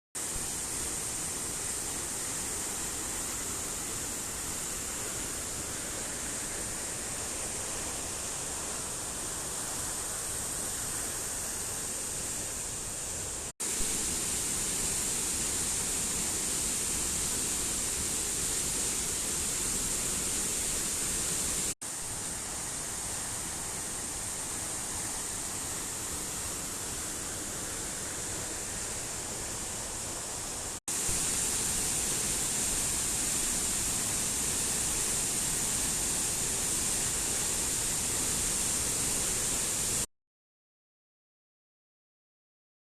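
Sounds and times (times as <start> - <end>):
waterfall rushing: 13.6 - 40.1.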